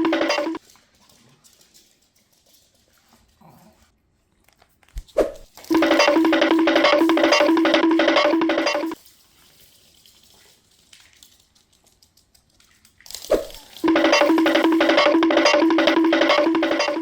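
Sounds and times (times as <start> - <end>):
bouncy comedy tune: 0.0 - 0.6, 5.7 - 9.0, 13.8 - 17.0.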